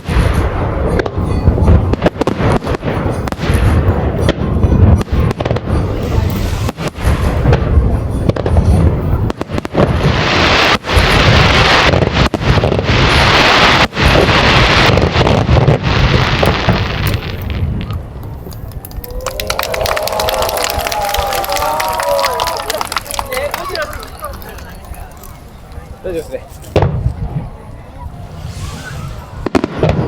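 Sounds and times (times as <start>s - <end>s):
fireworks bursts and booms: 0.0s - 19.1s, 26.6s - 30.0s
fireworks crackling hiss: 5.1s - 19.0s, 21.3s - 30.0s.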